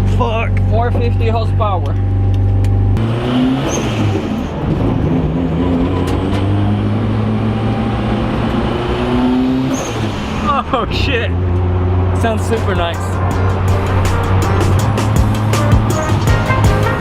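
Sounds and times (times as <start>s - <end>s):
car engine revving: 0.0s - 17.0s
car engine idling: 10.0s - 17.0s.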